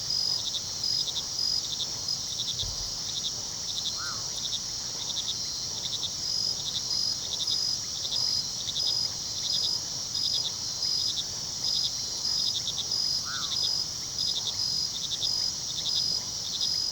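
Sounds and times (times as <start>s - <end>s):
crickets chirping: 0.1s - 16.9s.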